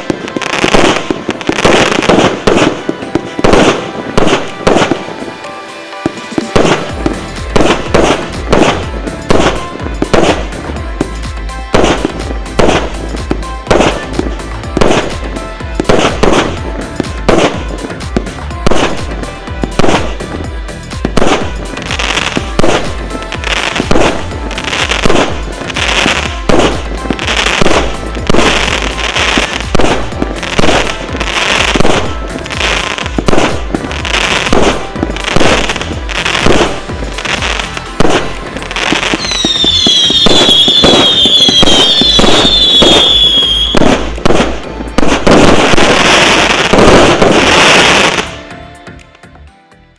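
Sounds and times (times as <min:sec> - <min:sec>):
fireworks shots and bursts: 0:00.0 - 0:49.1
falling firework whistles: 0:21.1 - 0:48.4.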